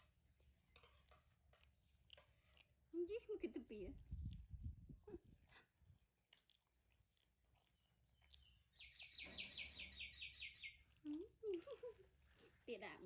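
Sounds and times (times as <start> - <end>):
bird trilling: 8.8 - 10.8.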